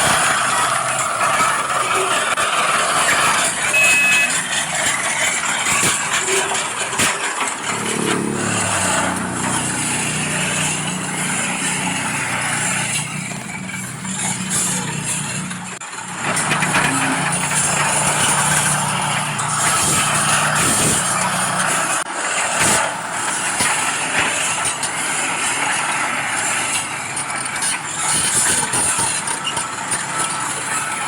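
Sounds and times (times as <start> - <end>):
low engine drone: 0.8 - 22.0
high beep: 3.7 - 4.3.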